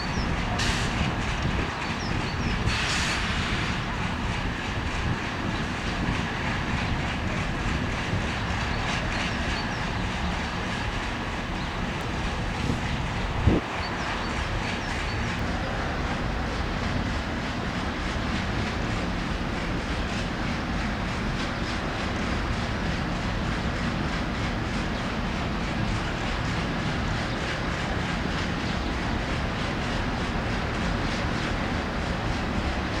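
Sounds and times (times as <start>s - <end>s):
train wheels clacking on rails: 0.0s - 33.0s.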